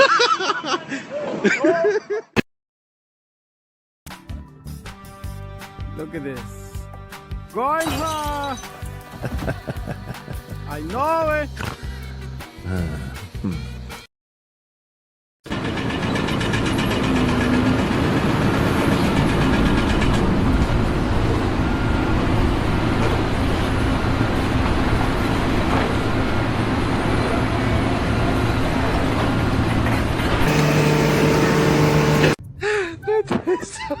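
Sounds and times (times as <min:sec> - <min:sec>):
music: 0:04.1 - 0:14.1
heavy engine running: 0:15.5 - 0:32.4.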